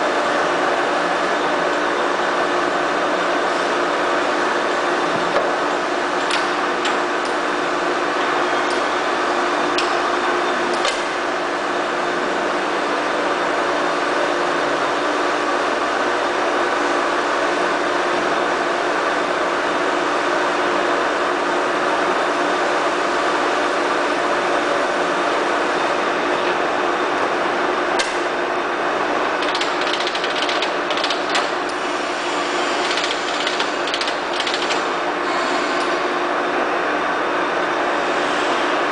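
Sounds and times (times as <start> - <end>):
lathe motor humming: 22.6 - 37.1.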